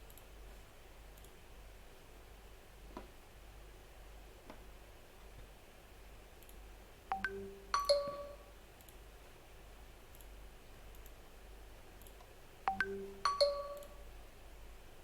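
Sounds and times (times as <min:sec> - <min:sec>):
electronic ding-dong chime: 0:07.1 - 0:08.5, 0:12.7 - 0:14.0.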